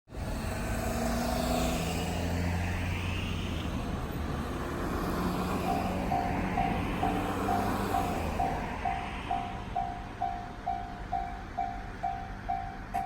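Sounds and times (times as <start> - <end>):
level crossing warning bell: 5.6 - 13.0.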